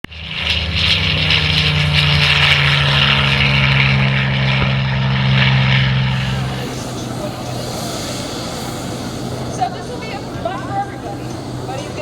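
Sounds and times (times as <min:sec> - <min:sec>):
propeller plane engine drone: 0:00.0 - 0:12.0.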